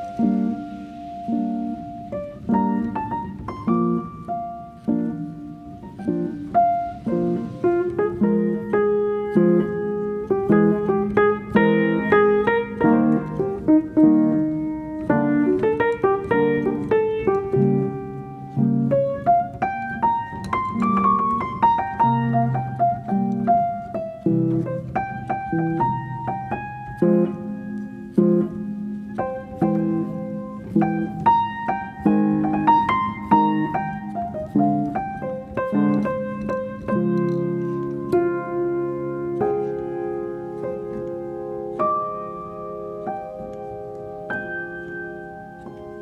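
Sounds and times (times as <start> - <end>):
piano music: 0.0 - 46.0.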